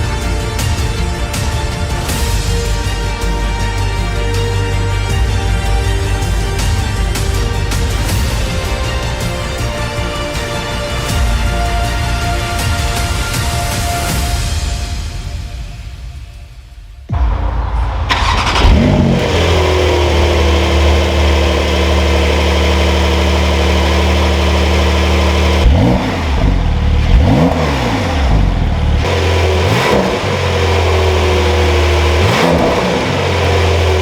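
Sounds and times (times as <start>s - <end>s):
car engine starting and idling: 17.2s - 34.0s
engine revving: 17.2s - 34.0s.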